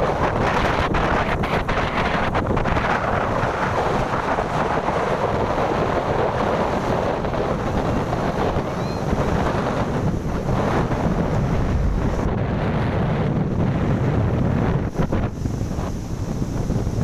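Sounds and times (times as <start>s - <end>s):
waves breaking: 0.0s - 17.0s
wind buffeting microphone: 0.0s - 17.0s.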